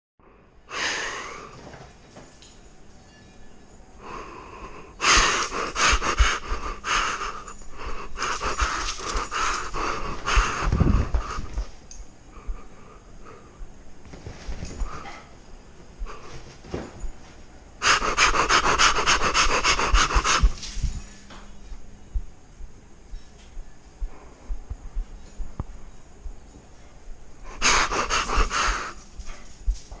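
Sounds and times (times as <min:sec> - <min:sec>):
person breathing heavily: 0:00.2 - 0:01.6, 0:04.0 - 0:11.7, 0:12.3 - 0:13.8, 0:14.5 - 0:15.4, 0:16.0 - 0:16.6, 0:17.8 - 0:22.2, 0:23.0 - 0:26.0, 0:27.4 - 0:29.5.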